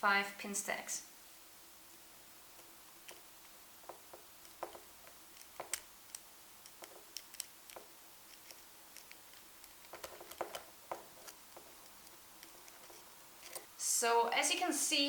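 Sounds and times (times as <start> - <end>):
lock pick clicks and scrapes: 4.0 - 13.7.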